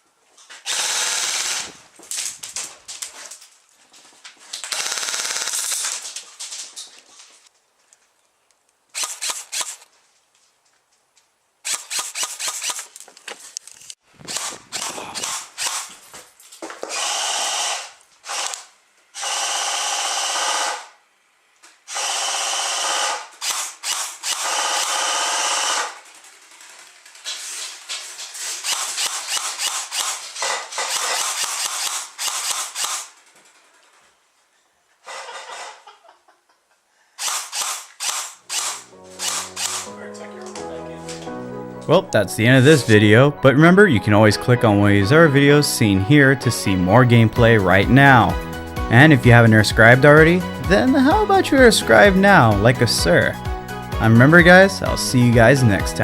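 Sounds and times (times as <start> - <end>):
full-auto bursts with mechanical whine: 0.7 - 1.7, 4.7 - 6.0, 9.0 - 9.8, 16.9 - 21.0, 21.9 - 26.1
airsoft guns firing: 4.7 - 6.0.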